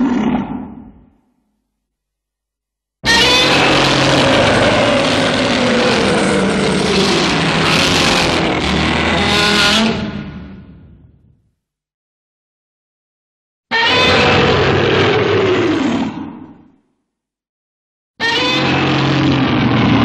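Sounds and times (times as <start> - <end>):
monster roar: 0.0 - 1.2, 3.0 - 10.8, 13.8 - 16.7, 18.4 - 20.0.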